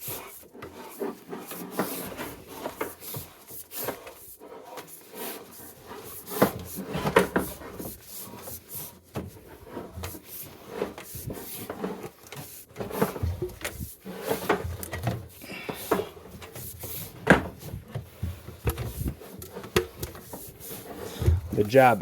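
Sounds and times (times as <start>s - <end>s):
equipment knocking and scraping: 5.8s - 22.0s.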